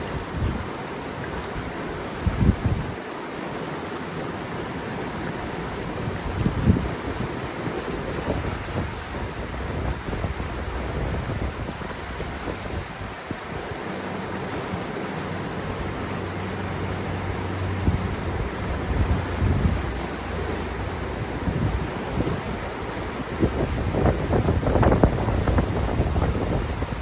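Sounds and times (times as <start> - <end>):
wind buffeting microphone: 0.0 - 3.0, 5.5 - 27.0
river water rushing: 0.0 - 27.0.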